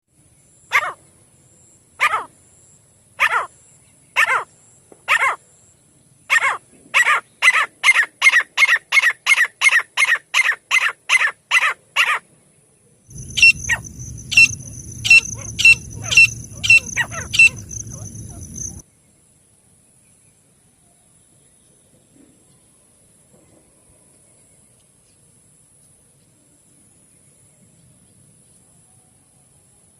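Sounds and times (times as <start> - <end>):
francolin calling: 13.1 - 18.8
low background hum: 13.1 - 18.8.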